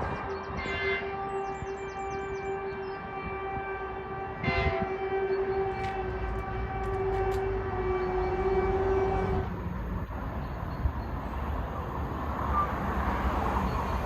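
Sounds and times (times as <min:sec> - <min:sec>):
train horn: 0:00.0 - 0:09.6.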